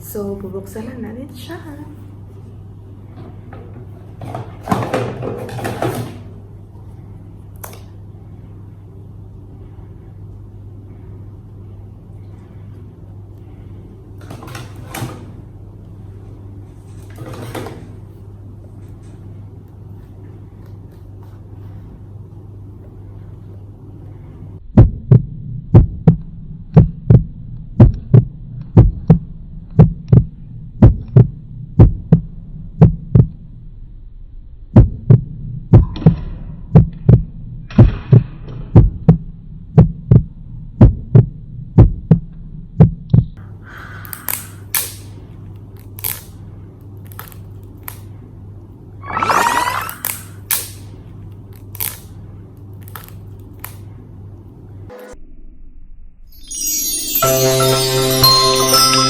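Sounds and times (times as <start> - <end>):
steady low hum: 0.0 - 49.1
regular low thumping: 24.7 - 33.4, 34.7 - 43.4.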